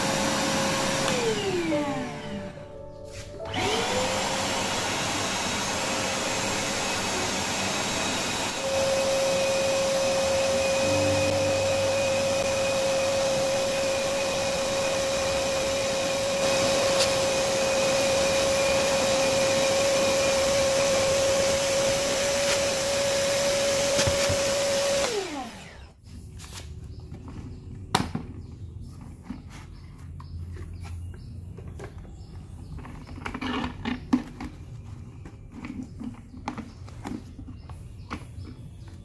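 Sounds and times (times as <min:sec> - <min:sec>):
vacuum cleaner whine: 0:00.0 - 0:26.0.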